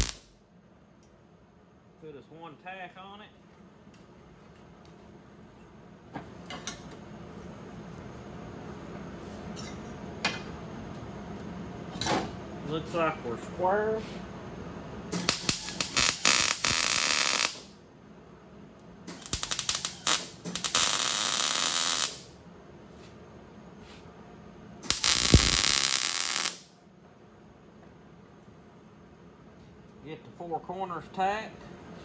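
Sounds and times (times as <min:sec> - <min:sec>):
crackling welding arc: 0:00.0 - 0:00.3, 0:15.1 - 0:17.7, 0:19.1 - 0:22.4, 0:24.8 - 0:26.7.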